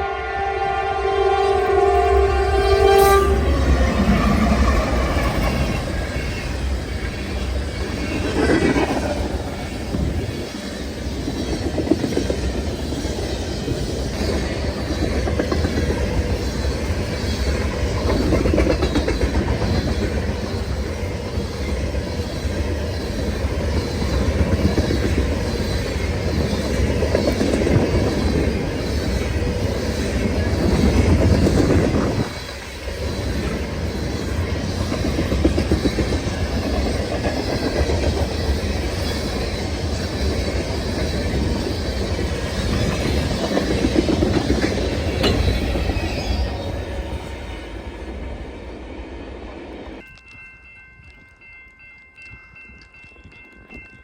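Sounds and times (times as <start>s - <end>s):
train horn: 0.0s - 6.6s
train cars rumbling past: 0.0s - 51.2s
wheels clacking over rail joints: 3.4s - 47.4s.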